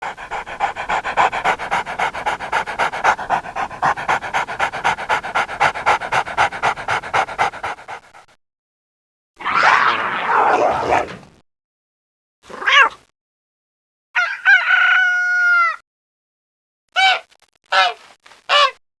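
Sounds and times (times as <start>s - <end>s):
dog panting rapidly: 0.0s - 8.3s.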